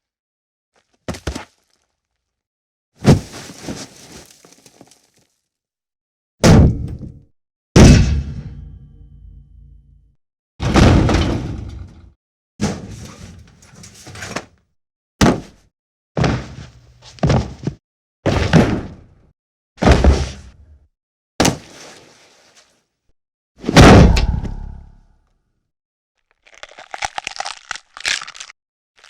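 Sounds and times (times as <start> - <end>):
heavy punch impacts: 6.4 - 6.9, 7.8 - 8.6, 23.7 - 24.9.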